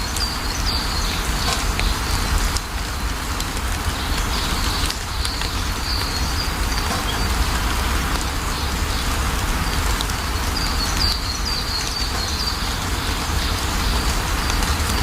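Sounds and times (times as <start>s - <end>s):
bird chirping: 0.0s - 2.6s, 3.9s - 7.6s, 8.5s - 14.8s
steady rain: 0.0s - 15.0s.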